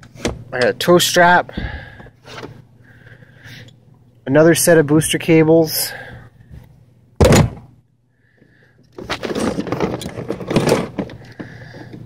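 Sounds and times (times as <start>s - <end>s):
loud thunk: 7.2s - 7.7s
tools clattering and rattling: 9.0s - 12.0s.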